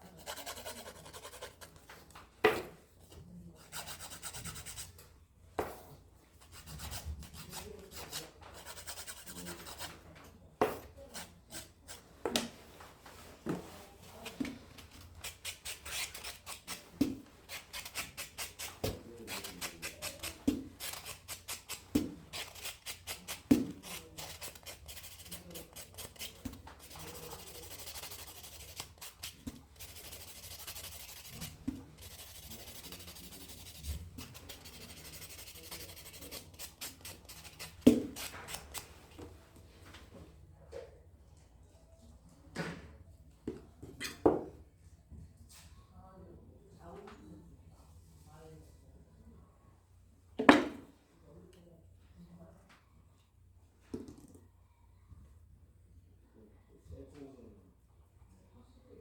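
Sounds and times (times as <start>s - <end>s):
nail file rubbing fingernail: 0.1s - 1.8s, 3.7s - 4.9s, 6.5s - 9.9s, 14.8s - 16.8s, 17.5s - 38.9s.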